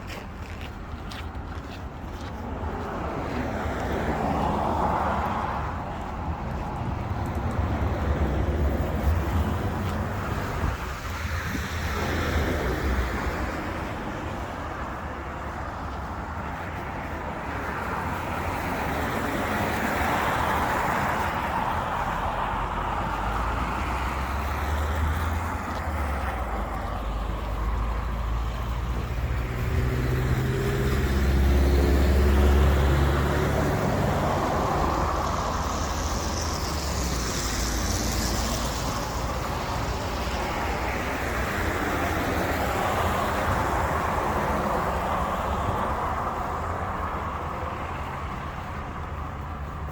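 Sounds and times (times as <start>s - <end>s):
city road traffic: 0.0s - 49.9s
vehicle engine hum passing by: 15.4s - 49.9s.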